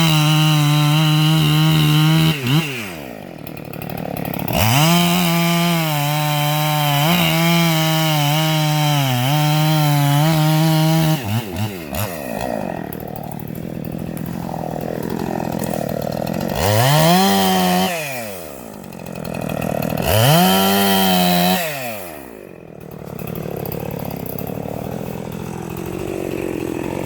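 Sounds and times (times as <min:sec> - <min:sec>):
chainsaw cutting at full throttle: 0:00.0 - 0:27.0.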